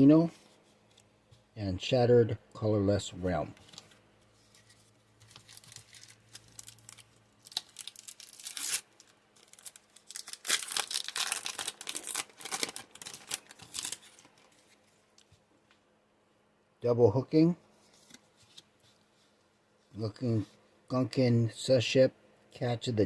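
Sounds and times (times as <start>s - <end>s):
foil wrapper tearing and crinkling: 5.2s - 14.6s.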